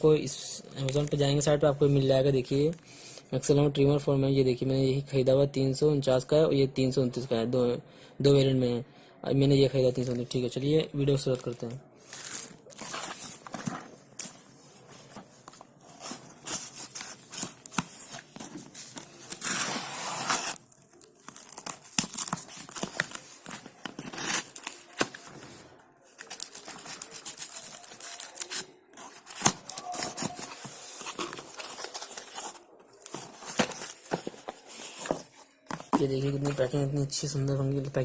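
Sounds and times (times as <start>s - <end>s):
packaging crinkling and rustling: 11.3s - 36.6s
packaging tearing: 15.9s - 25.4s.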